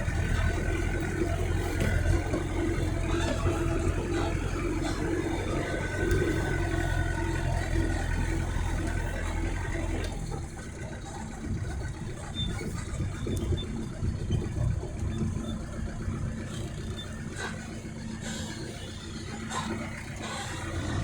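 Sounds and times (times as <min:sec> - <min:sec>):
engine running: 0:00.0 - 0:21.0.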